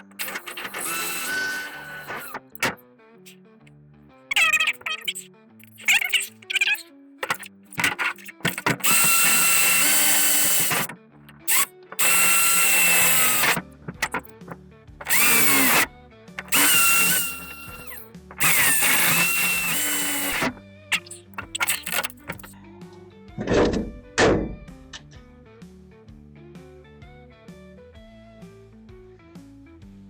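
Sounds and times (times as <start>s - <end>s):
power drill boring through metal: 0.0s - 2.8s, 5.6s - 22.5s.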